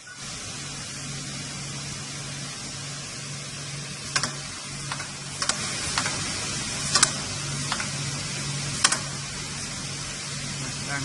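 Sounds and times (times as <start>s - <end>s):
sharp metallic clicks: 4.1s - 6.2s, 6.9s - 8.0s, 8.8s - 9.2s.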